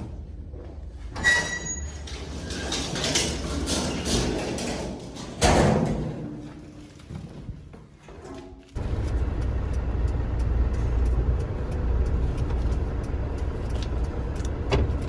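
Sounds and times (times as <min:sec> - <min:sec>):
lift rattling and knocks: 0:01.0 - 0:06.5, 0:11.9 - 0:15.0
lift click with squeal: 0:01.2 - 0:02.8.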